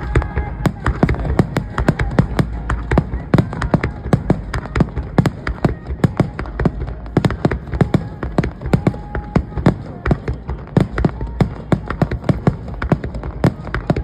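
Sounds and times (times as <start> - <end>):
fireworks exploding: 0.0 - 14.0.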